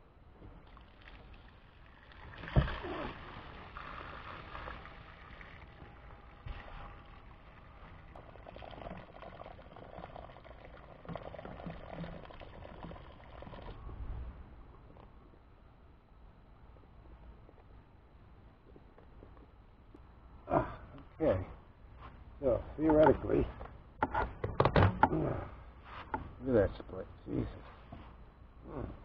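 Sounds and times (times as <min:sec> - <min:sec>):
water splashing: 0:00.6 - 0:13.8.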